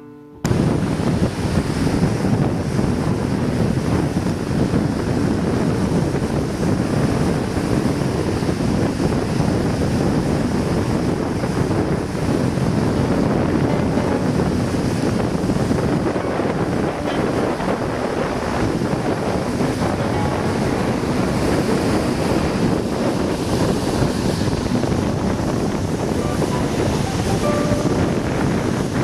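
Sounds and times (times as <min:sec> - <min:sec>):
wind buffeting microphone: 0:00.5 - 0:29.0.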